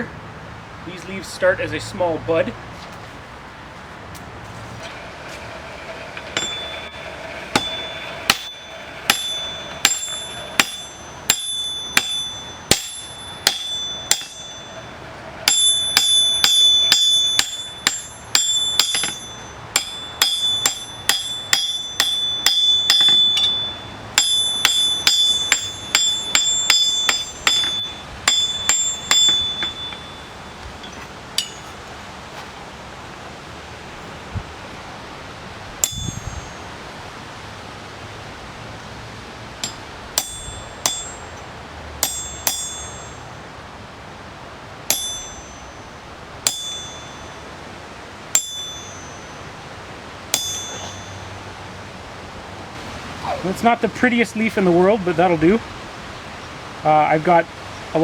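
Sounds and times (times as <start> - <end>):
hammer striking steel on anvil: 6.1 - 31.8, 35.8 - 36.6, 39.6 - 43.4, 44.9 - 47.6, 48.3 - 49.6, 50.3 - 51.4.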